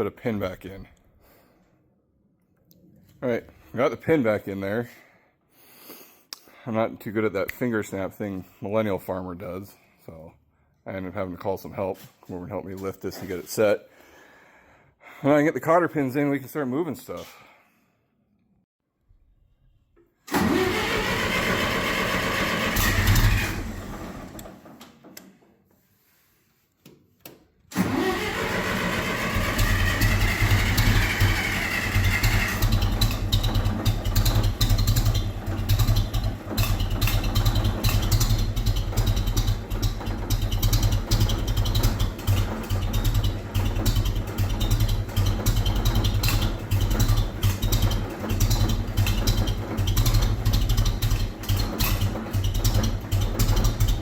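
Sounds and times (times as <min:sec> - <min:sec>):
starter motor cranking: 0:20.3 - 0:24.7, 0:27.7 - 0:54.0
tractor engine running: 0:20.3 - 0:24.7, 0:27.7 - 0:54.0.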